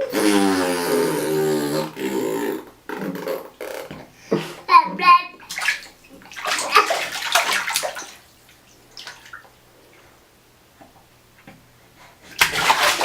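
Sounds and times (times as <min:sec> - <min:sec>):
baby splashing bathwater: 0:05.4 - 0:09.6, 0:12.3 - 0:13.0
faint water drips: 0:05.4 - 0:10.1.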